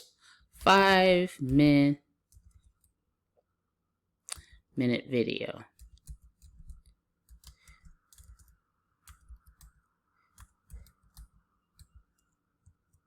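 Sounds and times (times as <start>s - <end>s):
computer keyboard keys clicking: 5.7s - 13.0s.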